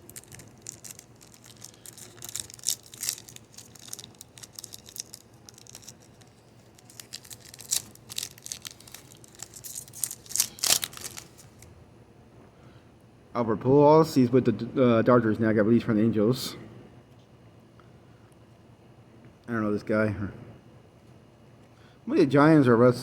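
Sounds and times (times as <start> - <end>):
foil wrapper tearing and crinkling: 0.0 - 11.7.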